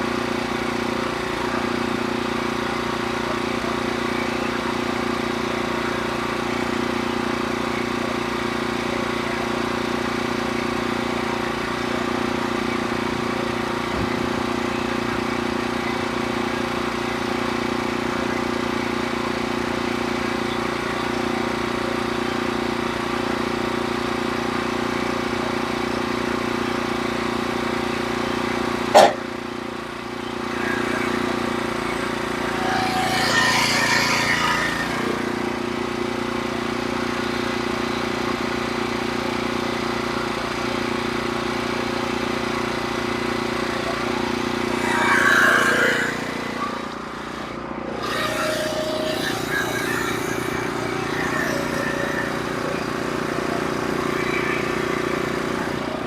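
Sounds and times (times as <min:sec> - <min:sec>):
sawmill engine running: 0:00.0 - 0:56.0
rough noisy sawing sound: 0:27.3 - 0:56.0
sharp knock: 0:29.0 - 0:29.2.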